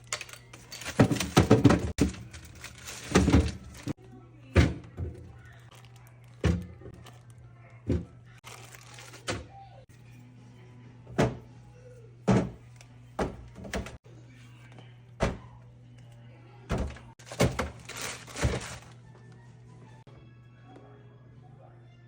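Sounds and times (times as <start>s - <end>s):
containers knocking in refrigerator: 0.9s - 3.9s.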